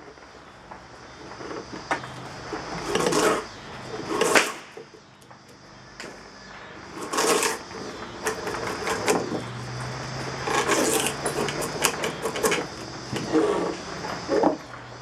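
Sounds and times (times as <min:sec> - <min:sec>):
draw knife shaving wood: 0:02.5 - 0:04.9, 0:06.9 - 0:14.6.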